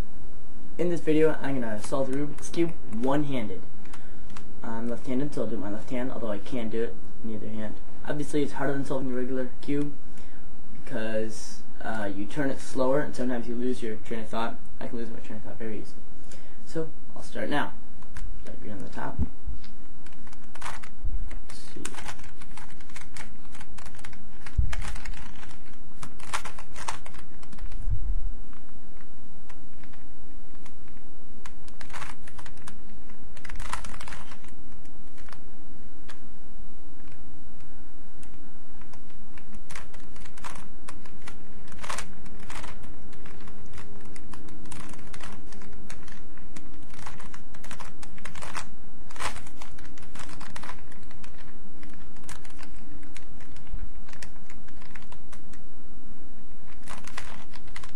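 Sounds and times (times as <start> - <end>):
puzzle cube plastic clicks: 20.0 - 27.8, 29.0 - 35.4, 38.2 - 55.6, 56.7 - 57.9.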